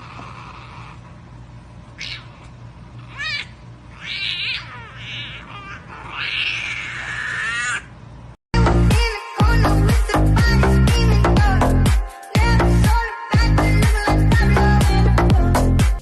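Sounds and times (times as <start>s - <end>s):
cat meowing: 3.1s - 7.9s
loud dance music: 8.6s - 16.0s.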